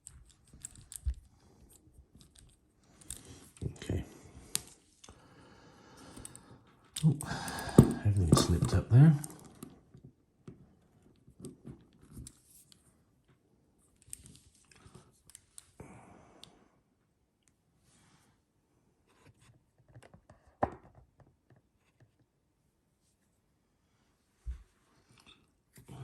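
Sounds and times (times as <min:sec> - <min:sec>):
lock pick clicking and scraping: 0:00.0 - 0:03.6.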